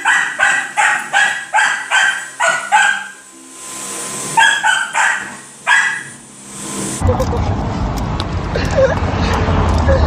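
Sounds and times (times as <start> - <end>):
dog barking: 0.0 - 3.2, 4.4 - 6.2.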